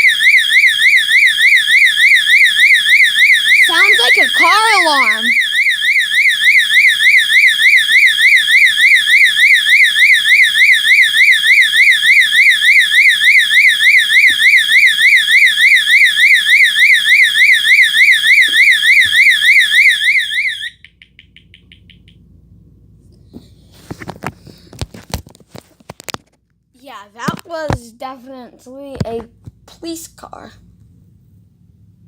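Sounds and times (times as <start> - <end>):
fire alarm warbling tone: 0.0 - 21.0.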